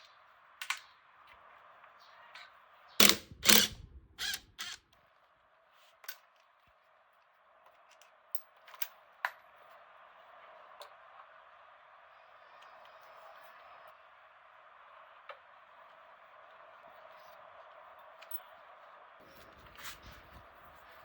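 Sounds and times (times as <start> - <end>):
engine parts knocking and clicking: 3.0 - 4.8.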